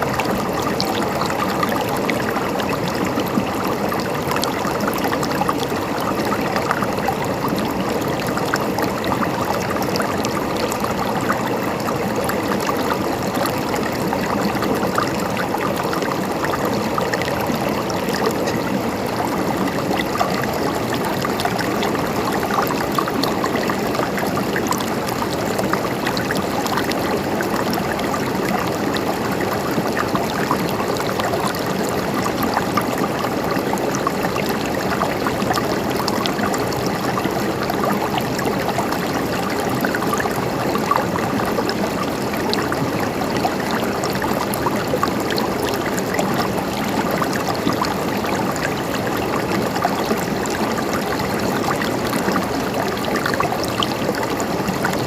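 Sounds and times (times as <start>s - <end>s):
stream water trickling: 0.0s - 55.0s.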